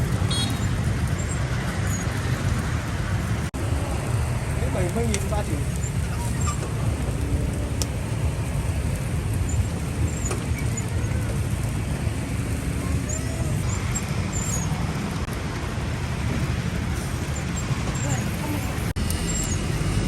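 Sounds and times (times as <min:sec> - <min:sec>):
traffic rumble: 0:00.0 - 0:20.0
faint voices: 0:10.3 - 0:15.3, 0:17.7 - 0:19.0.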